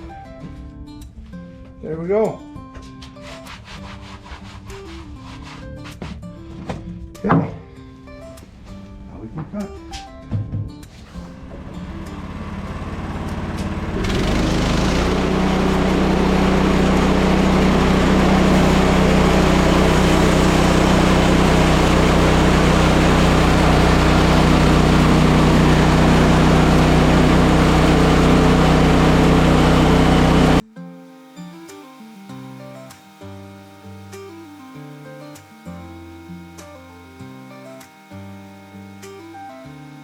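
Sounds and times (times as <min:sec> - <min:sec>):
band saw blade cutting log: 0:03.0 - 0:06.1, 0:11.1 - 0:40.0
gas engine throttling up: 0:11.2 - 0:30.6, 0:31.2 - 0:40.0.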